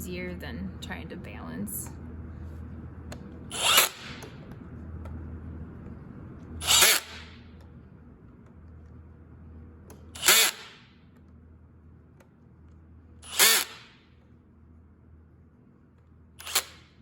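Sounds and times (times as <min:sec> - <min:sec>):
power drill driving screws: 0:03.5 - 0:04.2, 0:06.6 - 0:07.3, 0:10.2 - 0:10.8, 0:13.2 - 0:13.9, 0:16.4 - 0:16.8.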